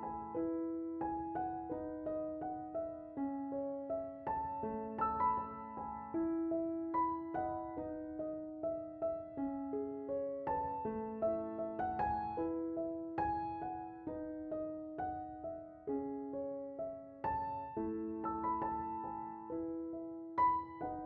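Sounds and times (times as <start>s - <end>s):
soft piano music: 0.0s - 21.0s.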